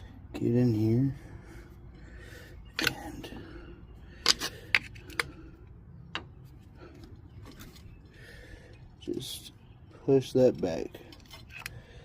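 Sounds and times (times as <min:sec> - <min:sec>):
metal pry tool clicking and scraping: 0:04.2 - 0:05.3.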